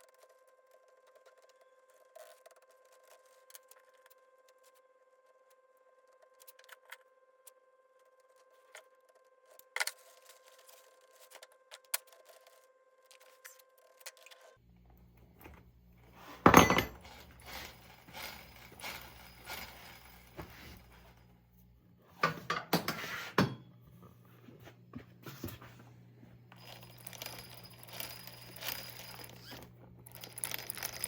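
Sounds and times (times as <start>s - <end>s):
small metal parts clinking: 16.2s - 21.2s, 26.5s - 31.0s.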